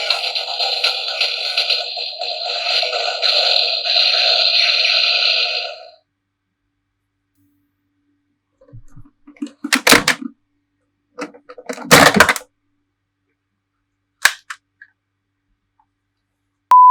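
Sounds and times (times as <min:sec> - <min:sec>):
sharp click: 0:14.2 - 0:14.6.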